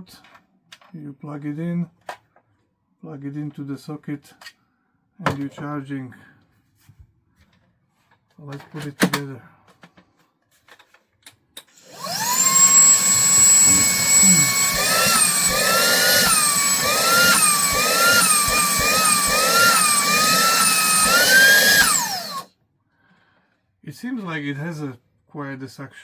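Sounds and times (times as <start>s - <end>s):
handheld vacuum motor whine: 11.7s - 22.5s.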